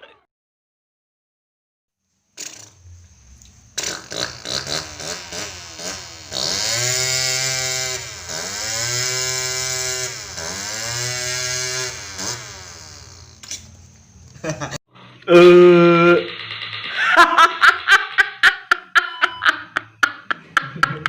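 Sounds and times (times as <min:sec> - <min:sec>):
child imitating revving engine: 0:03.8 - 0:13.4.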